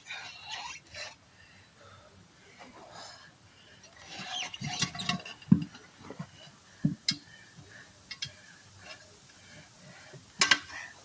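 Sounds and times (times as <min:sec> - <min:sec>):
tire tools clicking and knocking: 0:04.0 - 0:09.0, 0:10.1 - 0:10.9.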